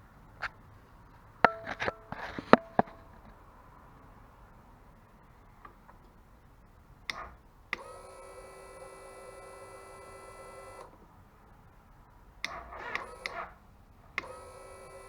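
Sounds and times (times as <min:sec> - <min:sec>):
fuel pump electric whine: 0:07.1 - 0:11.0, 0:12.4 - 0:15.0
ignition clicks: 0:12.4 - 0:13.6, 0:14.2 - 0:14.5.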